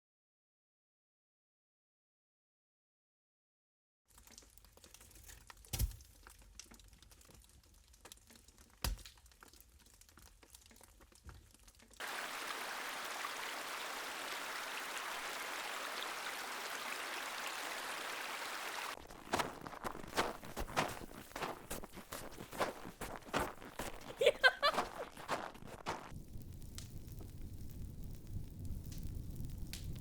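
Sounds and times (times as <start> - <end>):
fire crackling: 4.1 - 30.0
footsteps crunching in snow: 19.0 - 26.1.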